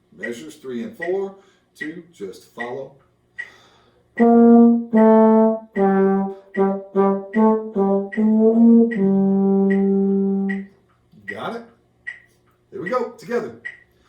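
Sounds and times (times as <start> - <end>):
metronome ticking: 0.0 - 14.0
brass instrument playing notes: 4.2 - 10.8.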